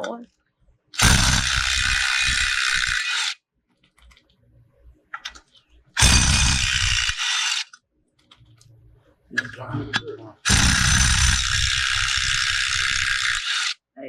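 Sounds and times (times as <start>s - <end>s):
impact wrench hammering: 1.0s - 3.2s, 6.0s - 7.6s, 10.5s - 13.7s.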